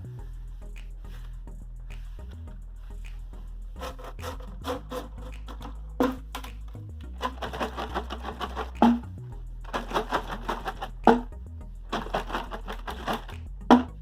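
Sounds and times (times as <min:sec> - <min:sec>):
background music with bass line: 0:00.0 - 0:14.0
sharp scraping strokes: 0:02.9 - 0:06.2.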